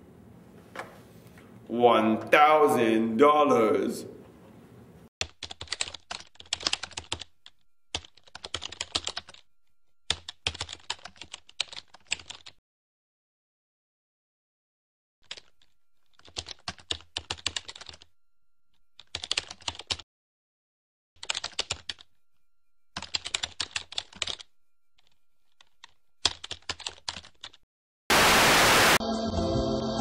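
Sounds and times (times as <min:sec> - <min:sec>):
typing on computer keyboard: 0:05.2 - 0:12.6, 0:15.2 - 0:18.1, 0:19.0 - 0:20.0, 0:21.2 - 0:27.6
static hiss burst: 0:28.1 - 0:29.0
music: 0:29.0 - 0:30.0.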